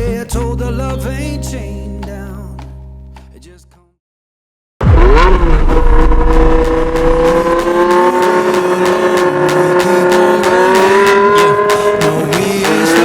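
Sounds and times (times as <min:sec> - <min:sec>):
car engine revving high: 0:04.8 - 0:13.0.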